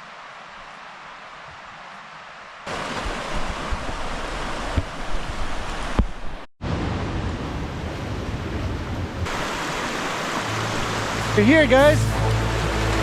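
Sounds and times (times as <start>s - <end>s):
river water rushing: 0.0s - 6.4s, 9.2s - 13.0s.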